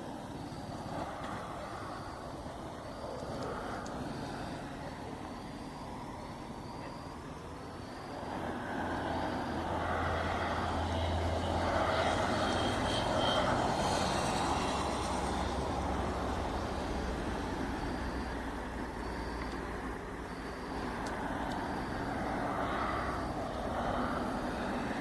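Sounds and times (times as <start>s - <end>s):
vehicle passing on road: 0.0s - 25.0s.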